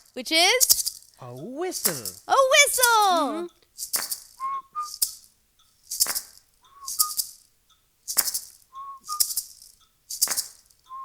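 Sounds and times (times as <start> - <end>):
maracas shaking: 0.0 - 7.5, 8.1 - 11.0
hand claps: 1.4 - 4.2, 6.0 - 7.2, 8.2 - 9.4, 10.2 - 11.0
two-note whistled phrase: 4.4 - 5.0, 6.6 - 7.2, 8.7 - 9.3.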